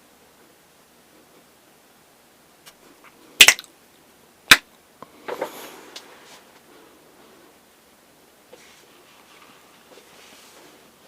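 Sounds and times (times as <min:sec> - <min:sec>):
faint steady hiss: 0:00.0 - 0:11.0
soft rustles: 0:05.2 - 0:07.6, 0:08.5 - 0:11.0.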